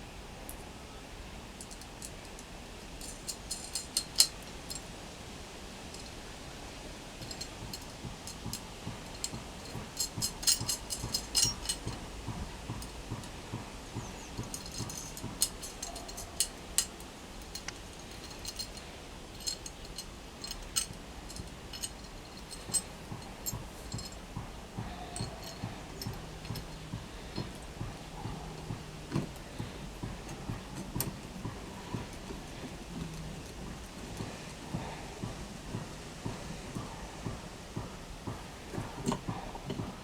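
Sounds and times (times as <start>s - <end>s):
faint low hum: 0.0s - 40.0s
metallic clicks of hand tools: 1.6s - 4.9s, 7.2s - 13.4s, 14.0s - 31.2s.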